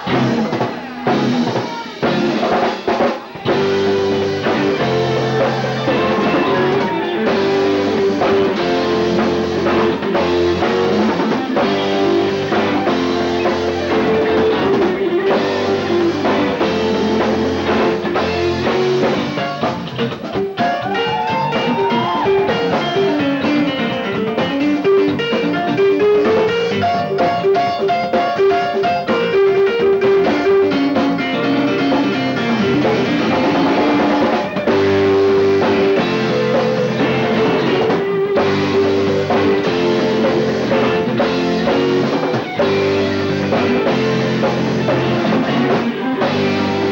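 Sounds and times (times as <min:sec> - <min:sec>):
rock band playing live: 0:00.0 - 0:46.9.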